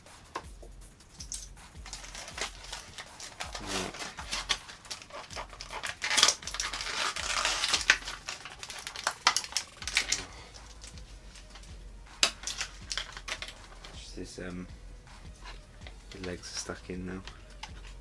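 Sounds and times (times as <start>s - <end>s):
plastic packaging crinkling: 2.1s - 10.8s.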